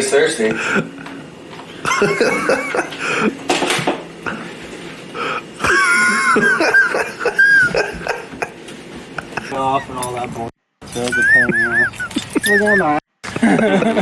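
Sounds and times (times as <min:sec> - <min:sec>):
person wheezing laughter: 0:01.9 - 0:03.4, 0:05.6 - 0:08.6
coughing gasps: 0:02.5 - 0:03.4.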